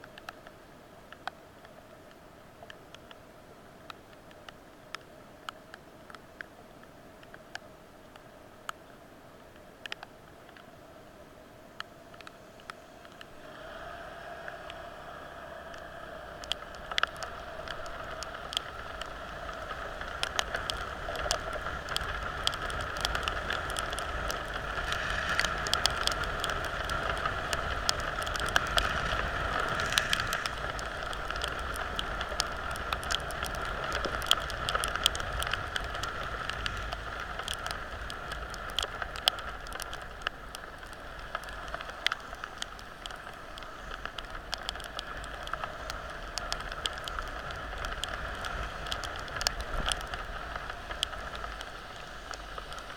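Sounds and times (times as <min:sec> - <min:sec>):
heavy rain: 0:12.1 - 0:52.9.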